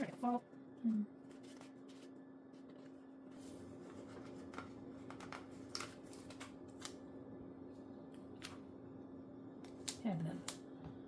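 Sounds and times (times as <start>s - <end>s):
steady low hum: 0.0s - 11.0s
paper rustling and tapping: 3.9s - 7.0s.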